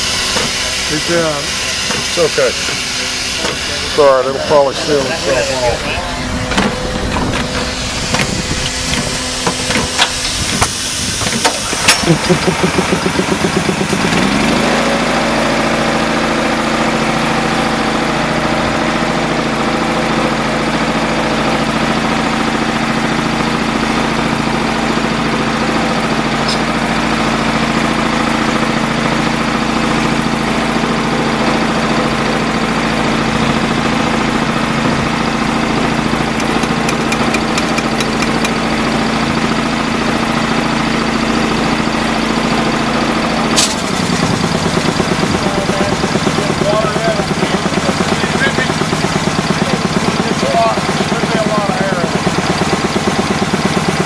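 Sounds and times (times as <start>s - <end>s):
air compressor engine running: 0.0s - 54.0s
sharp click: 36.4s - 38.6s.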